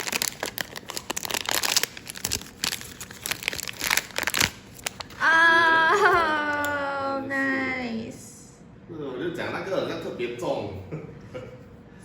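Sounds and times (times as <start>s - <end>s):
plastic packaging crackling: 0.0s - 5.2s.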